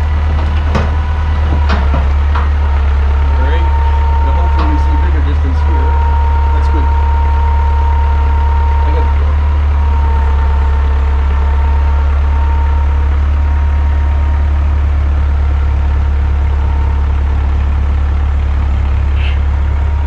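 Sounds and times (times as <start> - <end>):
sawmill engine drone: 0.0 - 20.0
high whine: 3.2 - 14.0.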